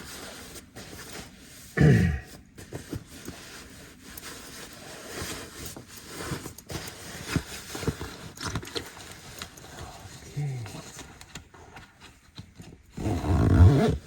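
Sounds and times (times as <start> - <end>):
short vocal sound: 1.8 - 2.3.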